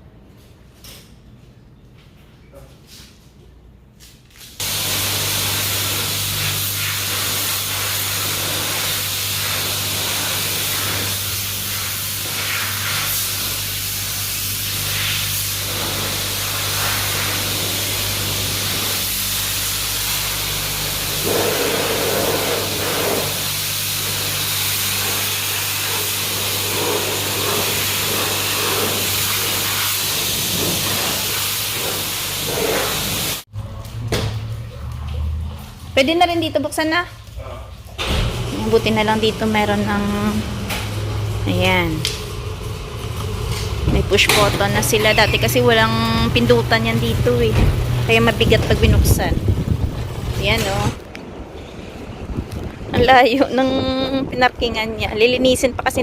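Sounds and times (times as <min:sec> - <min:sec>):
pressure washer spraying water: 0:04.6 - 0:33.5, 0:38.0 - 0:51.0.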